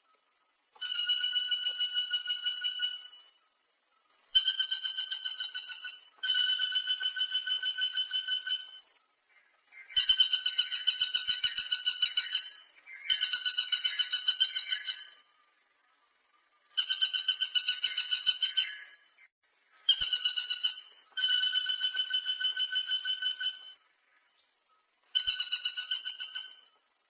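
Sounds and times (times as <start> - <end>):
woodpecker calling: 0.8 - 26.9.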